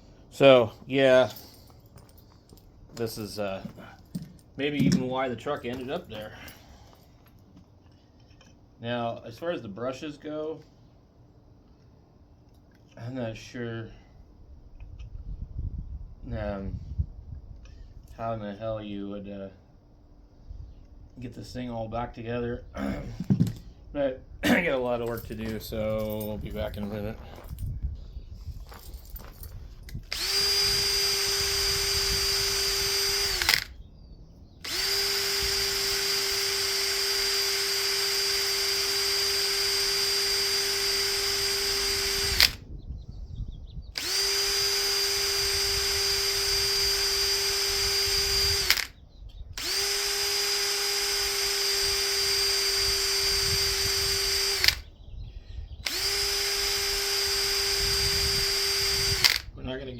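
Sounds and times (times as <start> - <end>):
power drill wire brush scrubbing: 30.1 - 33.7, 34.6 - 42.6, 44.0 - 48.9, 49.6 - 54.8, 55.9 - 59.4.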